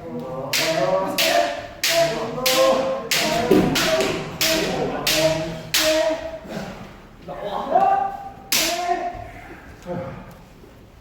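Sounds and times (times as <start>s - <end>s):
people shouting: 0.5s - 6.5s.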